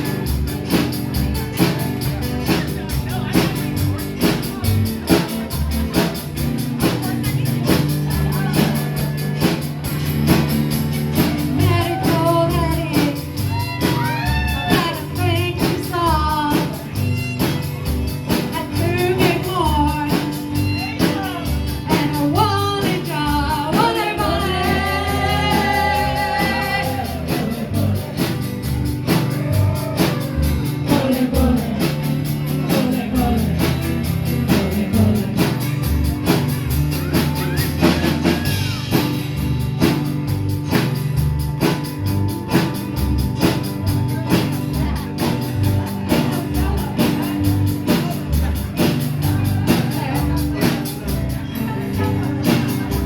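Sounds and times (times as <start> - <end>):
rock and roll band playing: 0.0 - 53.0
person singing: 11.4 - 16.9, 18.5 - 28.4, 29.2 - 36.2.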